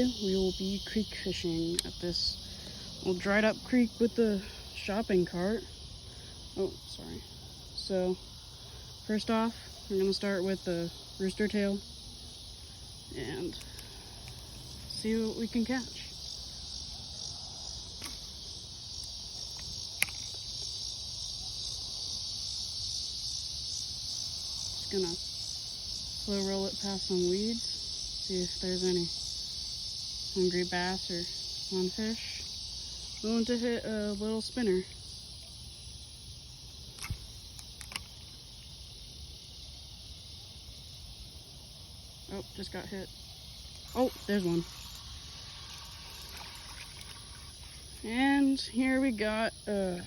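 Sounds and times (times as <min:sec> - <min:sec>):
insects chirping: 0:00.0 - 0:50.0
sharp clicks: 0:37.0 - 0:38.1.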